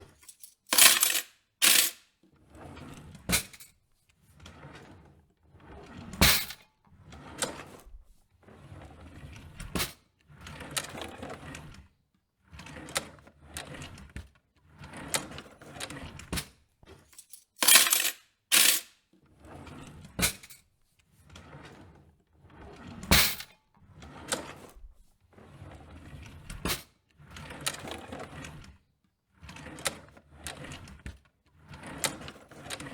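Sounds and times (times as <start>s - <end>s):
drawer clicking and banging shut: 0.0s - 1.9s, 6.2s - 6.6s, 17.6s - 18.8s, 23.1s - 23.5s
metal cutlery clattering: 0.0s - 2.0s, 17.2s - 18.9s
drawer runners sliding: 0.0s - 3.6s, 4.4s - 6.6s, 17.6s - 18.8s, 21.4s - 24.8s, 25.4s - 26.9s.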